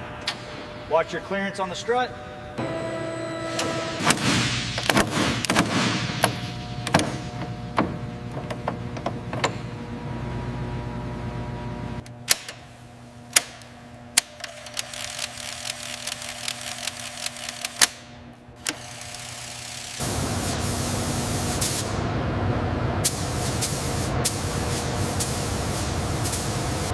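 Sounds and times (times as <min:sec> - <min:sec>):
steady machine hum: 0:00.0 - 0:26.9.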